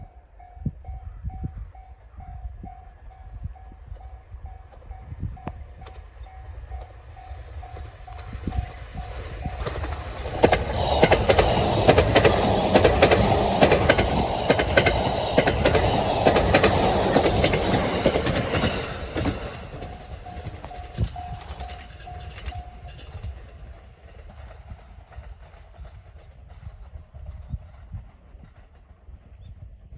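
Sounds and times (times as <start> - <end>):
train passing: 4.7 - 27.8
train wheels clicking over rail joints: 7.7 - 23.4.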